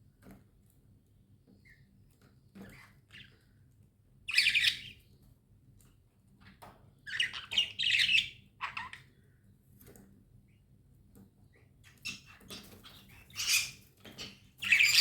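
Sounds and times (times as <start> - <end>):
budgerigars calling: 13.2 - 15.0.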